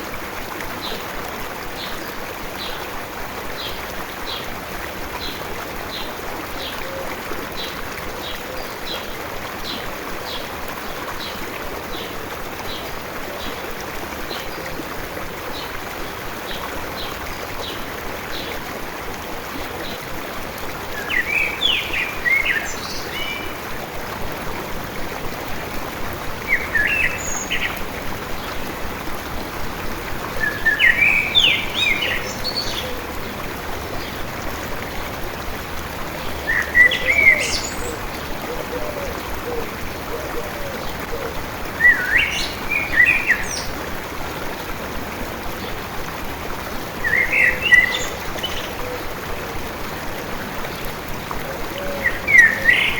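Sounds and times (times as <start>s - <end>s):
flowing stream: 0.0s - 52.9s
bird song phrases: 21.0s - 23.6s, 26.4s - 27.8s, 30.4s - 33.1s, 36.2s - 43.7s, 47.0s - 49.1s, 51.4s - 52.9s.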